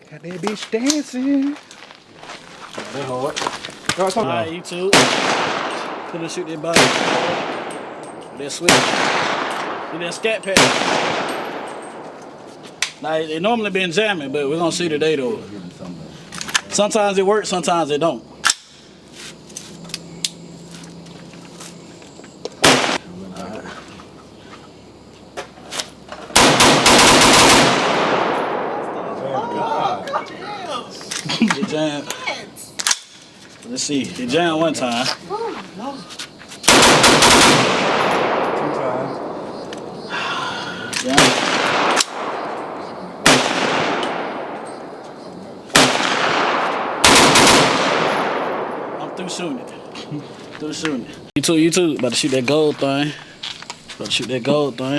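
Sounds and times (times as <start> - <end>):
faint distant gunshots: 3.9 - 12.6, 22.6 - 23.2, 26.3 - 29.9, 36.6 - 40.2, 41.0 - 50.0
gunshots: 3.9 - 13.0, 22.6 - 23.1, 26.3 - 30.0, 36.6 - 40.0, 41.0 - 50.0.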